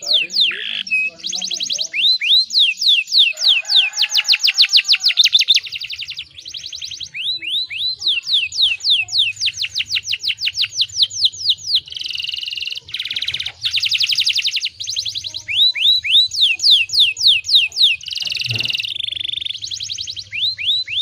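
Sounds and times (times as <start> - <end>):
canary singing: 0.0 - 21.0.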